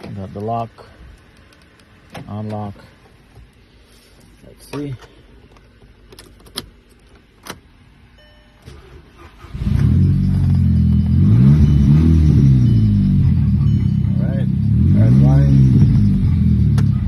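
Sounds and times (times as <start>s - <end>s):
car engine starting and idling: 4.6s - 17.0s.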